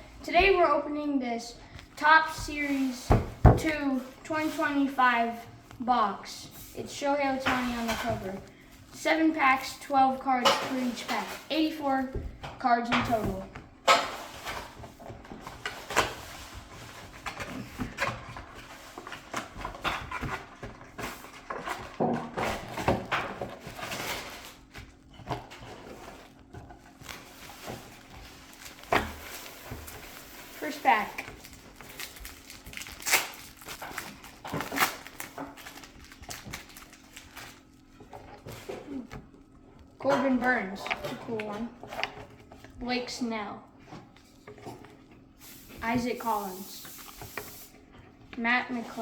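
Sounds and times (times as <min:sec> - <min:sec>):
cardboard box rustling and crinkling: 0:14.6 - 0:39.6.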